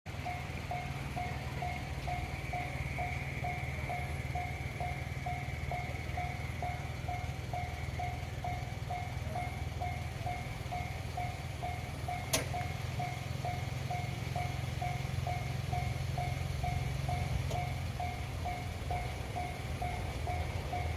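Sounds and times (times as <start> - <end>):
level-crossing warning bell: 0.1 - 20.9
steady low rumble: 0.1 - 20.9.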